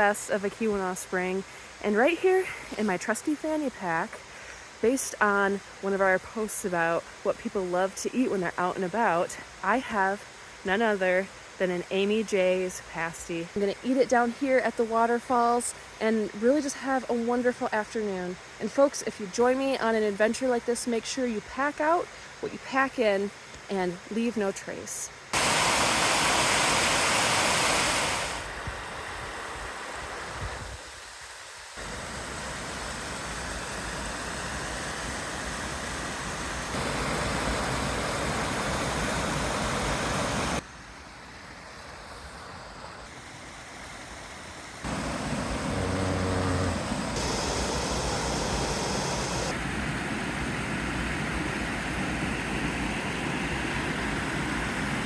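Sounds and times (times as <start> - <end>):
roar of falling water: 44.8 - 49.6.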